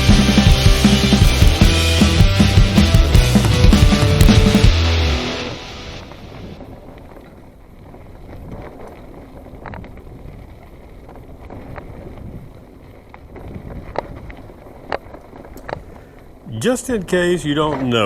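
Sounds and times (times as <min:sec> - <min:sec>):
bike tyre rumble on dirt: 0:00.0 - 0:18.0
wind on microphone: 0:06.1 - 0:16.0.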